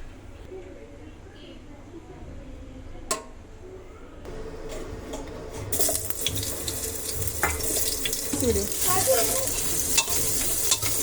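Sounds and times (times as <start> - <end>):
food sizzling in hot oil: 5.7 - 11.0.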